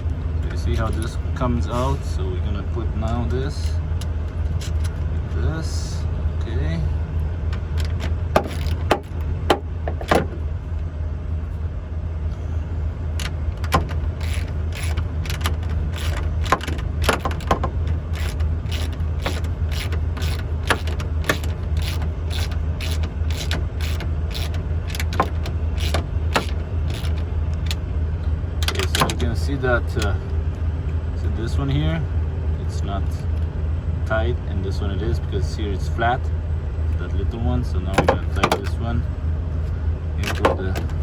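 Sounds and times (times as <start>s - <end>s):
low engine hum: 0.0s - 41.0s
wrench clicking: 13.2s - 27.8s.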